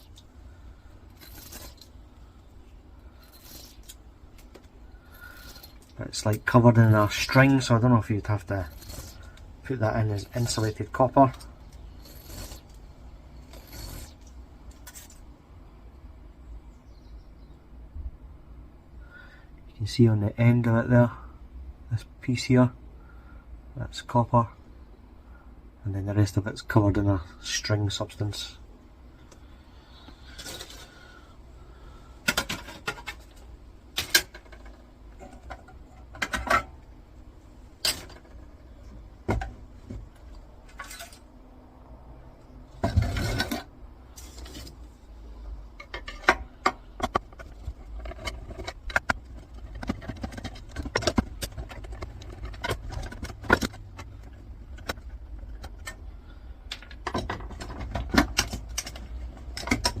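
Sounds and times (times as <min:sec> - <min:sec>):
metal and plastic parts clinking: 0:45.8 - 0:56.0, 0:56.7 - 1:00.0.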